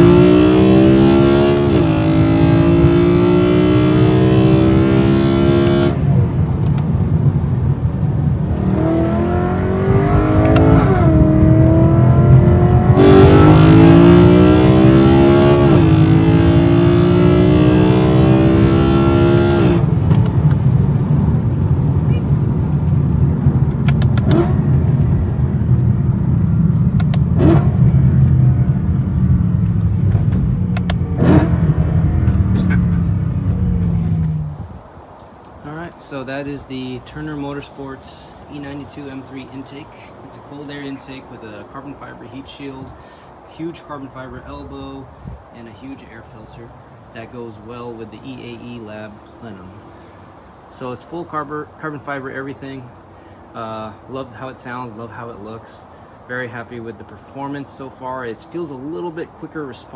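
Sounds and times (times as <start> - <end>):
car engine accelerating: 0.0 - 34.8
sharp clicks: 23.6 - 24.5, 27.0 - 27.3, 30.7 - 31.0.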